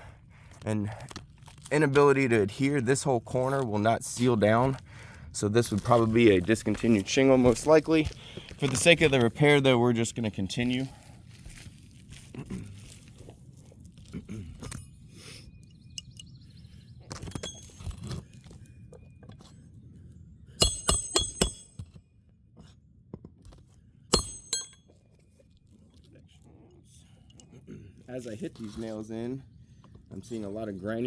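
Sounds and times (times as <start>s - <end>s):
shingles being handled: 5.6s - 14.1s
hatchet striking roofing nails: 20.6s - 22.0s, 24.1s - 24.8s.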